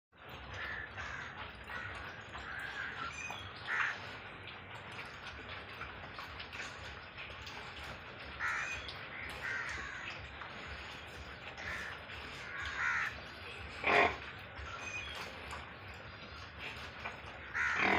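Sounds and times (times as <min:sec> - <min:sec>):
crows cawing: 0:00.5 - 0:04.0, 0:08.4 - 0:10.2, 0:11.6 - 0:13.2, 0:17.4 - 0:17.9.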